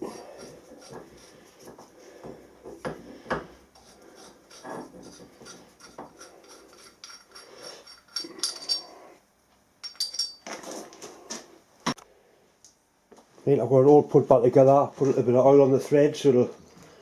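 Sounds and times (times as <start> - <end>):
metal parts rubbing and scraping: 3.8 - 9.1
ringing metal clinks: 7.0 - 9.0, 9.8 - 10.5.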